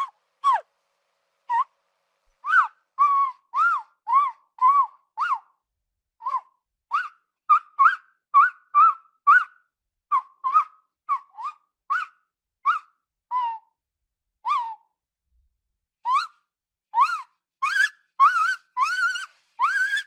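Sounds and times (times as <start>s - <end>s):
tapir whistling calls: 0.0s - 0.7s.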